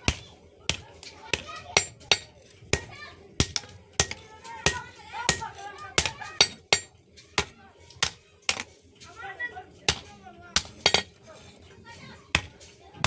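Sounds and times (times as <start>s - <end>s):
hammer striking metal on anvil: 1.3s - 7.0s, 10.6s - 11.1s.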